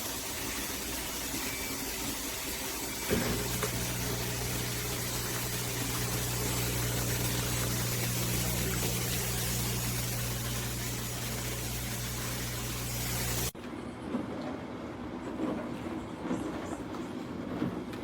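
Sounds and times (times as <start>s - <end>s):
dishwasher pump humming: 0.0s - 13.6s
water spraying inside dishwasher: 0.0s - 13.6s.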